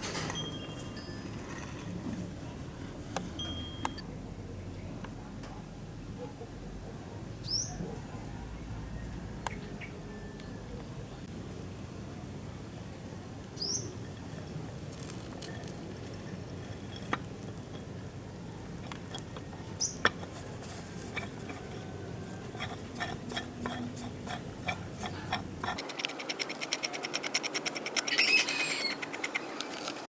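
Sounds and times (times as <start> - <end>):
fast even clicking: 22.5 - 30.0.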